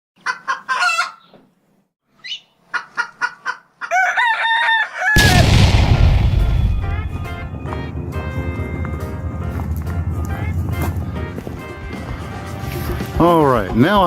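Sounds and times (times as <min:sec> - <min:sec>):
rooster clucking and crowing: 0:02.7 - 0:05.2.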